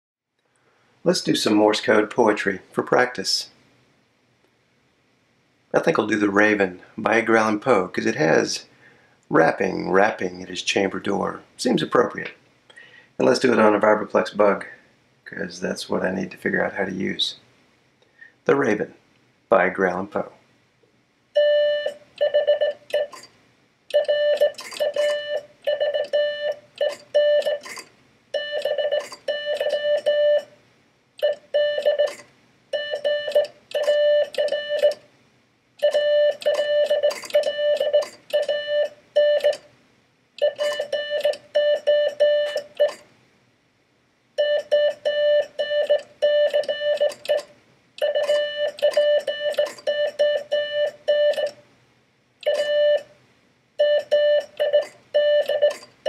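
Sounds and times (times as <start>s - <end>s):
morse code tone: 21.4s - 23.3s, 23.9s - 30.5s, 31.2s - 32.2s, 32.8s - 35.0s, 35.8s - 39.6s, 40.4s - 43.0s, 44.4s - 51.6s, 52.4s - 53.1s, 53.8s - 55.8s.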